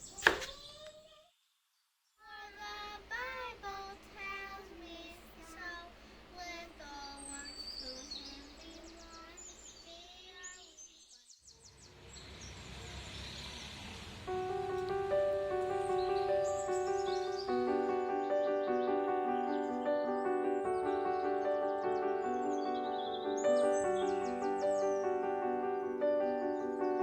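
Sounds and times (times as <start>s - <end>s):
birds chirping: 0.0s - 1.2s, 2.2s - 27.0s
child singing: 0.0s - 1.3s, 2.2s - 11.2s
soft music: 14.3s - 27.0s.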